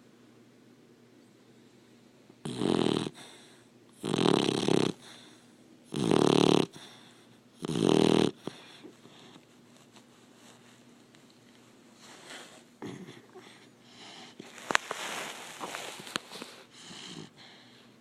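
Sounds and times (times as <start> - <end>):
puppy snoring: 2.4 - 9.3, 12.2 - 14.4, 16.8 - 17.6.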